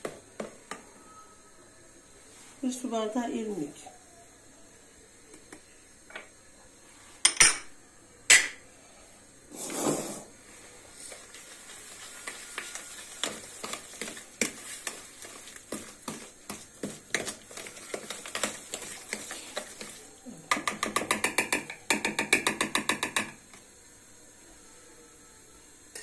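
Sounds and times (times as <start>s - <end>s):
spoon clinking and scraping bowl: 11.9s - 21.8s.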